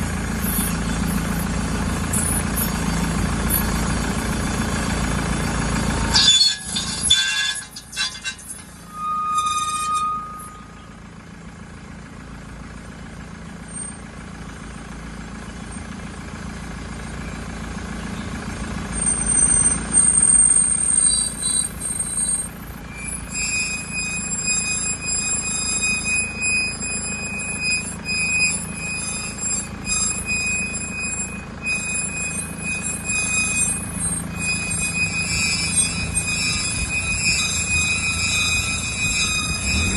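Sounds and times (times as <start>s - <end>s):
high-pitched whine: 0.0s - 11.1s, 19.5s - 39.9s
car driving with rumbling drone: 0.0s - 39.9s.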